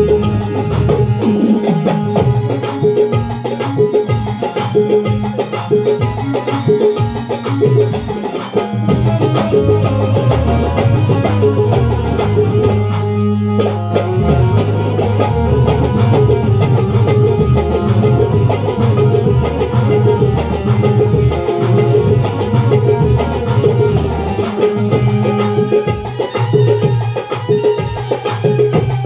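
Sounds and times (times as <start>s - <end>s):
song with heavy bass line: 8.7s - 29.0s.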